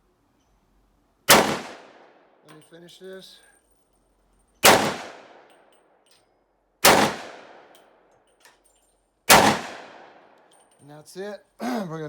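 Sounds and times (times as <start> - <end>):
pistol shots: 1.3 - 2.1, 4.6 - 5.5, 6.8 - 7.7, 9.3 - 10.3.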